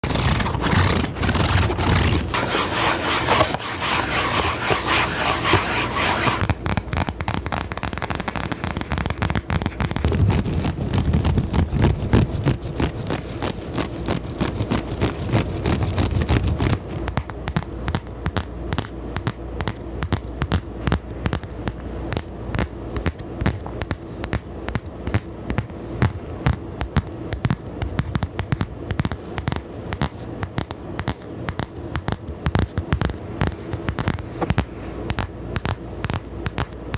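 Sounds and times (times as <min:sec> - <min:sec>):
scratchy hiss: 0:00.0 - 0:16.8
clicks and scratches: 0:00.0 - 0:17.0.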